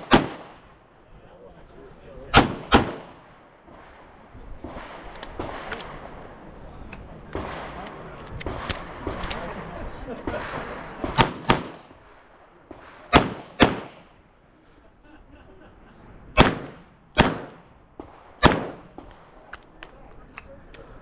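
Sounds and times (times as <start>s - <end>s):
revolver gunshots: 0.0s - 0.8s, 2.3s - 6.3s, 7.0s - 14.2s, 16.4s - 19.8s.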